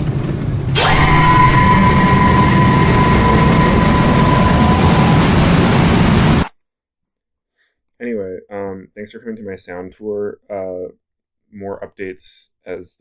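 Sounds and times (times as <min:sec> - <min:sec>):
loud rush with high whine: 0:00.0 - 0:06.5
low rumble: 0:00.0 - 0:06.5.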